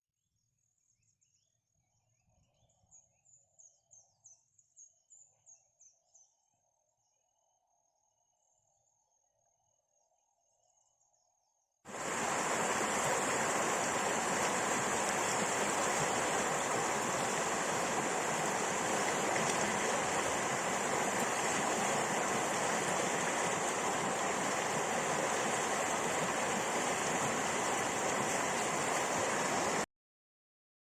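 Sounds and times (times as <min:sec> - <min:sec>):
faint insect chirping: 0:00.4 - 0:29.8
rushing flowing water: 0:11.9 - 0:29.9.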